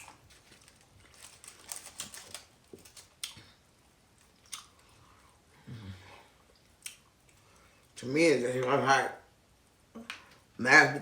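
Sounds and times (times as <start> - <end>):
chewing and mouth clicks: 3.0 - 3.5, 4.2 - 5.0.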